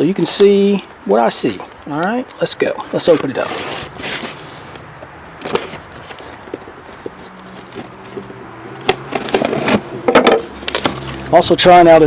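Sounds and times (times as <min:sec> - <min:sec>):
cardboard box rustling: 0:00.5 - 0:11.3
cardboard clicks and knocks: 0:05.0 - 0:11.2.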